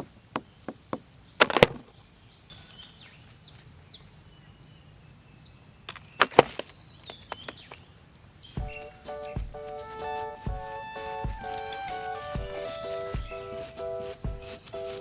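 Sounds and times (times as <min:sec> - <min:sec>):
faint high falling chirps: 0:08.4 - 0:15.0
sharp knocks: 0:10.4 - 0:14.9.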